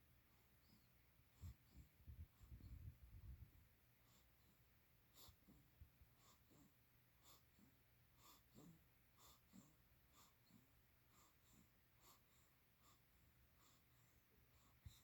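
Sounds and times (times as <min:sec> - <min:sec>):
faint wheezy snoring: 0:06.2 - 0:13.0.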